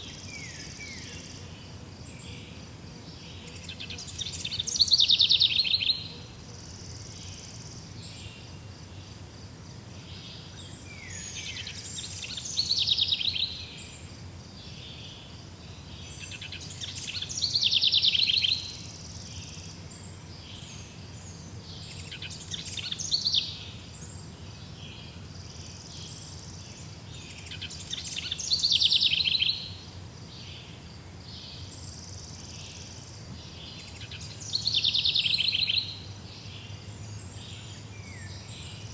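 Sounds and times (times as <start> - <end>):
low background hum: 0.0 - 38.9
songbird trilling: 3.2 - 8.5, 10.0 - 14.1, 16.0 - 30.7, 31.4 - 38.9.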